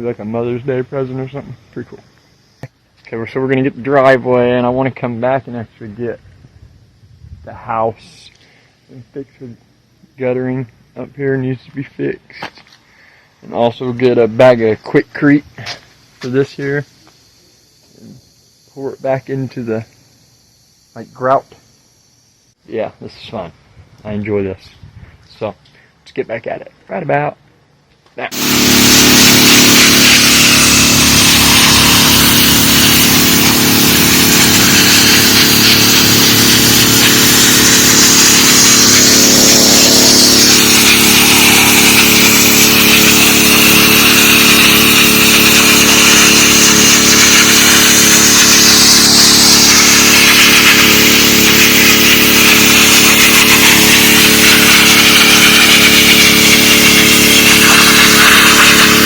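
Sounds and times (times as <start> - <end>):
pressure washer engine running: 28.3 - 59.0
water jet hissing on concrete: 28.3 - 59.0.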